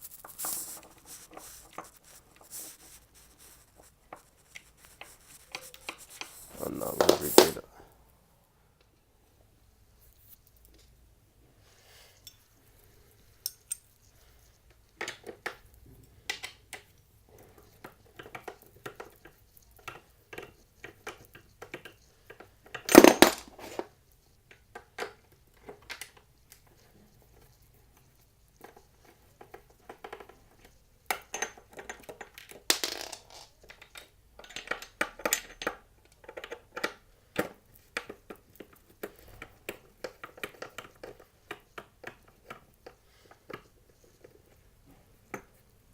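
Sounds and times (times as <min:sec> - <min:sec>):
metal hardware clicking and clinking: 0:13.4 - 0:13.9.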